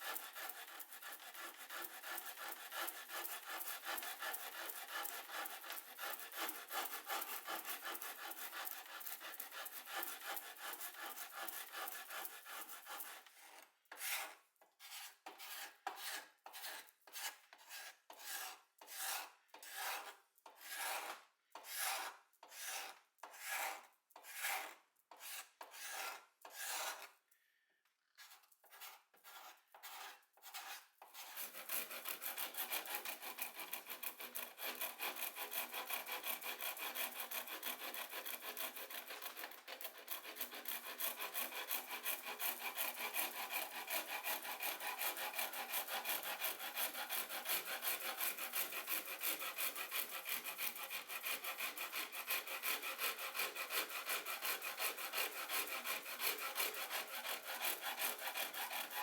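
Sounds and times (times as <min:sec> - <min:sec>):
wood being sanded by hand: 0:00.0 - 0:13.2, 0:31.3 - 0:59.0.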